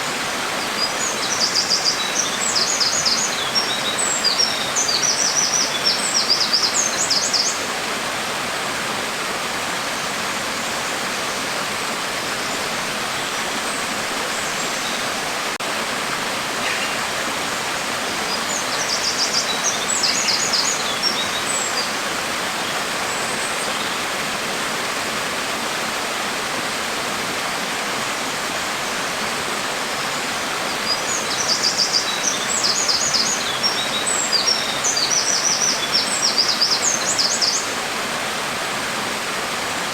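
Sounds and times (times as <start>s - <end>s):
birds chirping: 16.6s - 24.1s.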